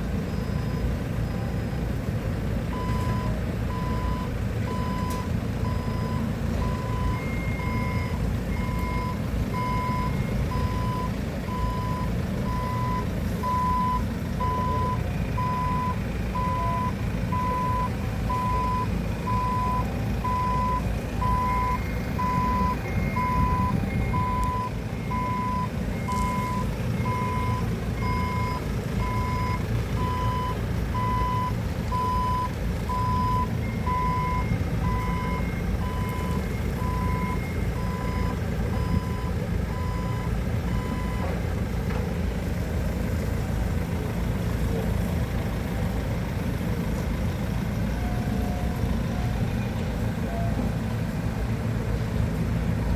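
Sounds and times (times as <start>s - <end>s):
low engine rumble: 0.0s - 52.9s
reversing alarm beeping: 0.1s - 2.0s, 2.7s - 41.3s.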